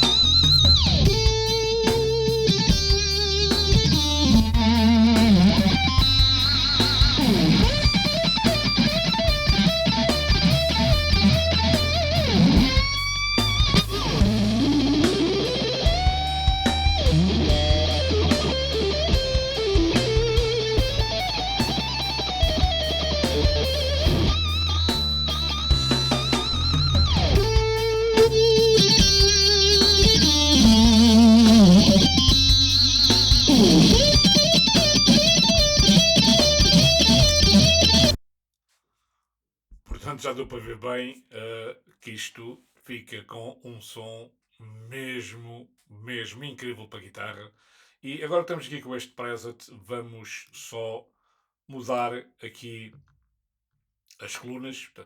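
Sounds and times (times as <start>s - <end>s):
drum-like hits: 0.0s - 38.2s
electric guitar lead lines: 0.0s - 38.2s
low bass line: 0.0s - 38.2s.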